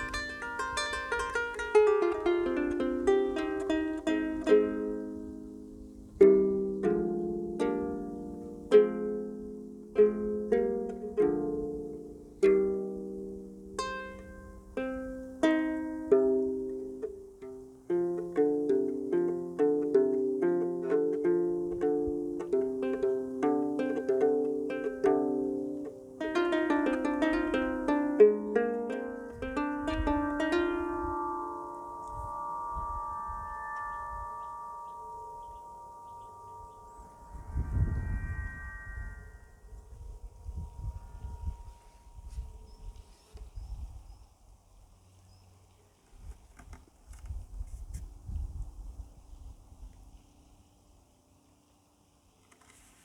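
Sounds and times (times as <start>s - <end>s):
harp being plucked: 0.0s - 39.8s
low rumble: 32.0s - 42.8s.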